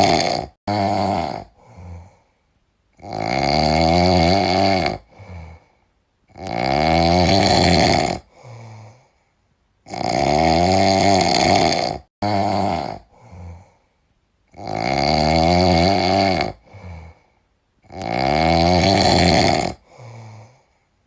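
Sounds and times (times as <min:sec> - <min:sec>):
loud deep snoring: 0:00.0 - 0:02.2, 0:03.0 - 0:05.7, 0:06.3 - 0:09.1, 0:09.8 - 0:13.8, 0:14.5 - 0:20.7.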